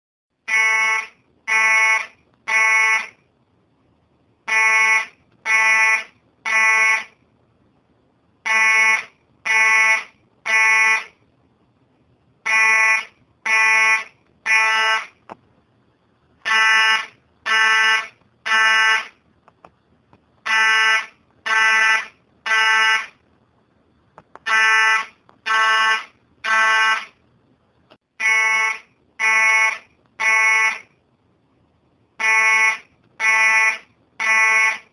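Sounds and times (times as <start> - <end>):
fire alarm beeping: 0.5 - 3.2, 4.5 - 7.2, 8.5 - 11.1, 12.5 - 15.2, 16.5 - 19.1, 20.5 - 23.2, 24.5 - 27.1, 28.2 - 30.9, 32.2 - 34.9.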